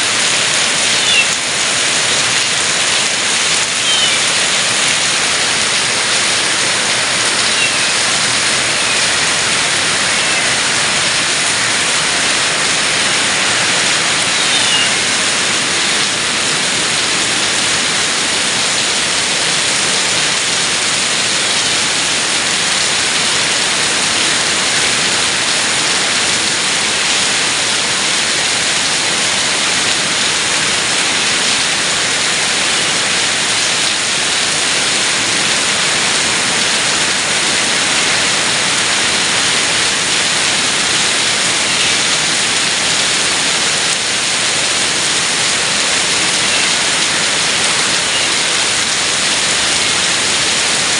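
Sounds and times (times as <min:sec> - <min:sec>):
heavy rain pouring: 0:00.0 - 0:50.9.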